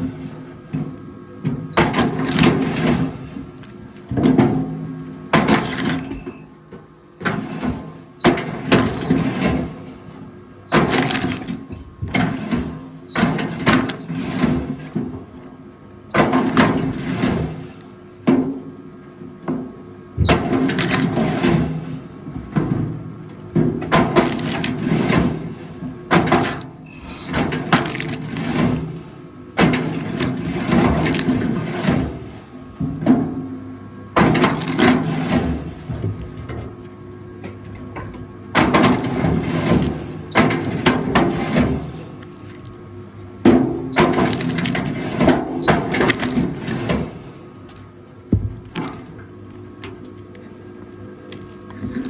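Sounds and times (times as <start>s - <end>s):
high squeal: 6.0s - 8.0s, 11.3s - 12.8s, 26.6s - 27.2s
low machine hum: 46.2s - 52.0s.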